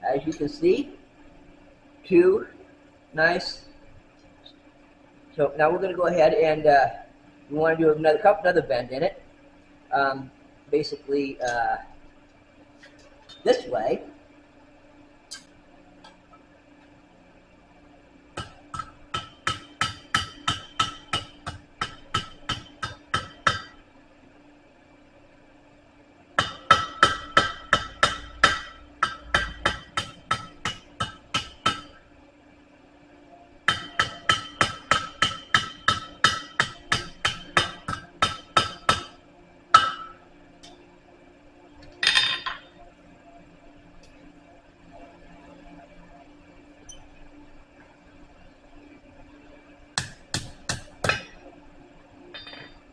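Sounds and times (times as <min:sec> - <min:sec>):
hammer striking steel on anvil: 0:18.4 - 0:23.8, 0:26.4 - 0:32.0, 0:33.7 - 0:40.2, 0:42.0 - 0:42.6, 0:50.0 - 0:51.5, 0:52.3 - 0:52.8
metal clang: 0:42.0 - 0:42.7, 0:52.4 - 0:52.8.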